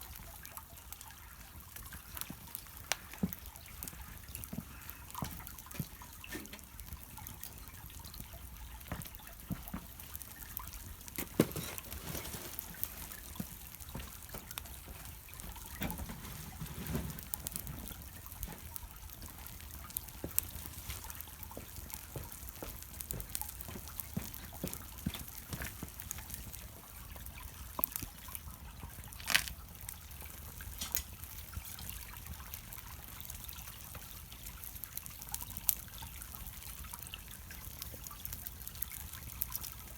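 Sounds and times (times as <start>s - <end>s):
fire popping: 0.0s - 39.9s
wood fire crackling: 0.0s - 39.9s.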